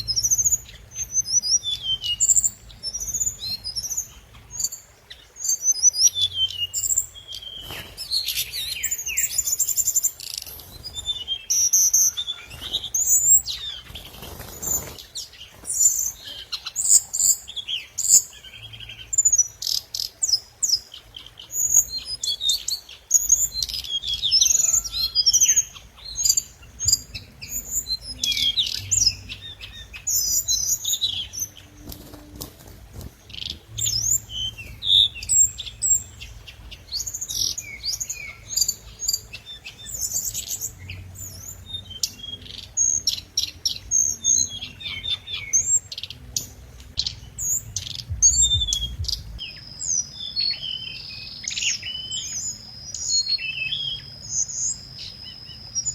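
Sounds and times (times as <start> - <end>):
songbird chirping and trilling: 0.0 - 55.9.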